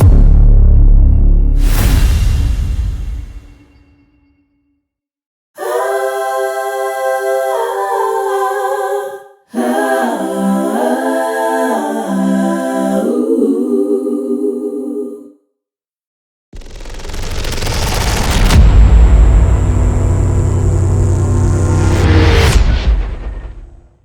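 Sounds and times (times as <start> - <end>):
a cappella choir singing: 5.6 - 15.4.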